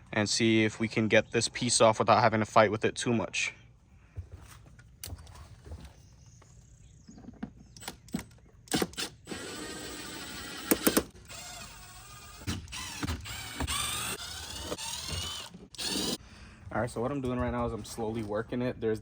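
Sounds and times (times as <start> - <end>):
cordless drill motor whine: 8.9 - 16.2.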